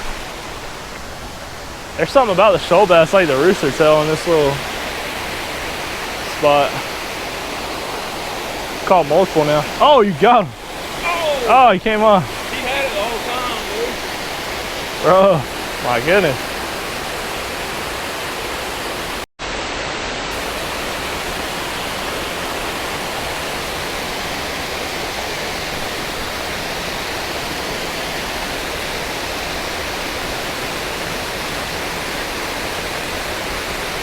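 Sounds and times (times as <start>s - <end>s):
water pouring over spillway: 0.0s - 19.2s.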